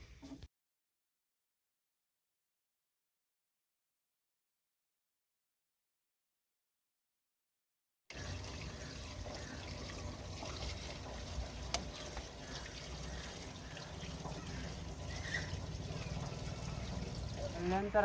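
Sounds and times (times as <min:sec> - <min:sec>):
liquid pouring in a trickle: 0:08.1 - 0:18.0
low steady hum: 0:08.2 - 0:18.0.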